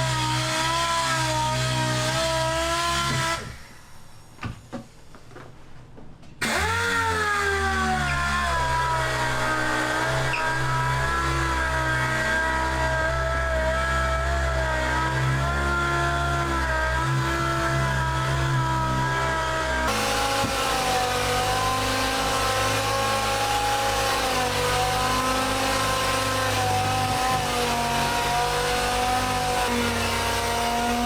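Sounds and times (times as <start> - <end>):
power sander running: 0.0 - 3.8, 6.4 - 31.0.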